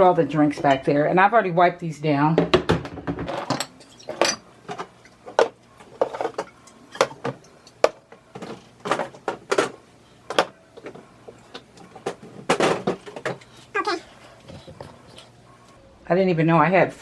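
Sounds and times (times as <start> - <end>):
cans and bottles clinking: 3.2 - 15.8.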